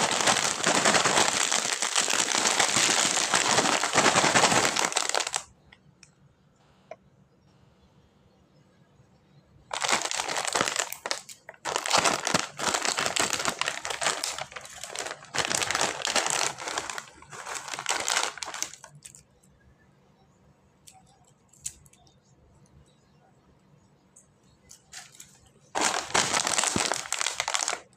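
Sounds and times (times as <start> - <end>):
plastic packaging crinkling: 0.0 - 5.5, 9.7 - 19.2, 24.7 - 27.9.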